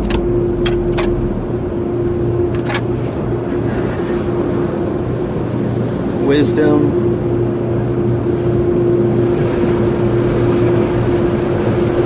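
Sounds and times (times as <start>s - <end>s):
droning background hum: 0.0s - 12.0s.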